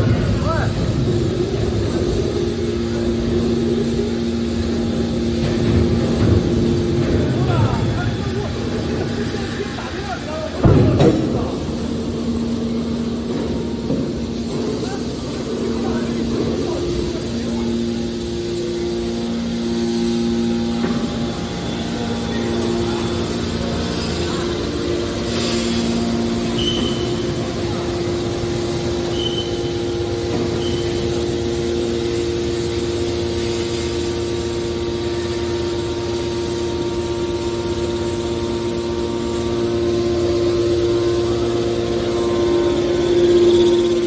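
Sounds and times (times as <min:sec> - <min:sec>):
hydraulic baler humming and whining: 0:00.0 - 0:44.0
short high-pitched squeaks: 0:26.5 - 0:27.2.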